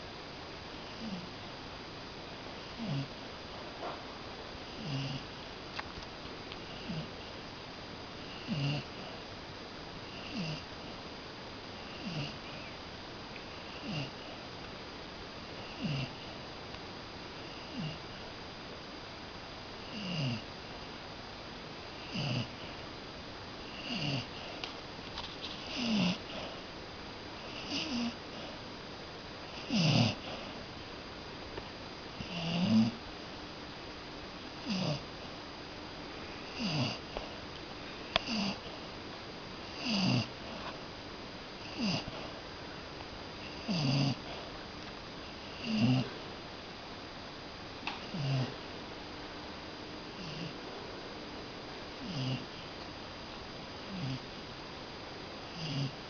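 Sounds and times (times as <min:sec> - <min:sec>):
dog snoring: 0:00.8 - 0:01.3, 0:02.7 - 0:03.2, 0:04.7 - 0:05.4, 0:06.6 - 0:07.3, 0:08.2 - 0:09.2, 0:10.0 - 0:10.9, 0:11.8 - 0:12.8, 0:13.5 - 0:14.4, 0:15.6 - 0:16.4, 0:17.4 - 0:18.2, 0:19.8 - 0:20.5, 0:21.9 - 0:22.8, 0:23.6 - 0:24.6, 0:25.4 - 0:26.6, 0:27.4 - 0:28.6, 0:29.4 - 0:30.6, 0:32.1 - 0:33.0, 0:34.6 - 0:35.3, 0:36.4 - 0:37.4, 0:38.1 - 0:38.9, 0:39.6 - 0:40.8, 0:41.6 - 0:42.4, 0:43.4 - 0:44.5, 0:45.3 - 0:46.2, 0:48.0 - 0:48.6, 0:50.2 - 0:50.6, 0:52.0 - 0:52.7, 0:53.8 - 0:54.3, 0:55.5 - 0:56.0.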